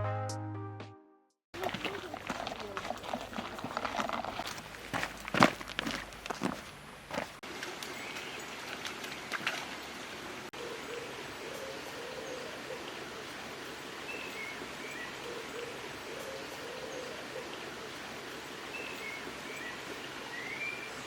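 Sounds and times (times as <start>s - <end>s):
stream running: 1.5s - 21.0s
footsteps: 1.6s - 9.8s.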